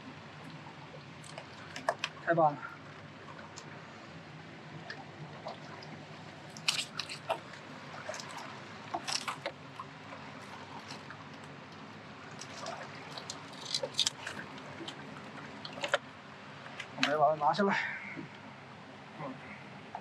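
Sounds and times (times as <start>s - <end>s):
handling crackles and clicks: 12.4s - 15.0s.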